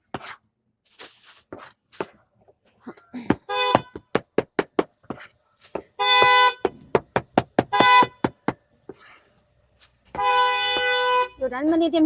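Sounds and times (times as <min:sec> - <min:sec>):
vehicle horn honks: 0:03.5 - 0:04.0, 0:06.0 - 0:06.7, 0:07.7 - 0:08.2, 0:10.1 - 0:11.5
cleaver chopping meat on board: 0:05.8 - 0:08.6.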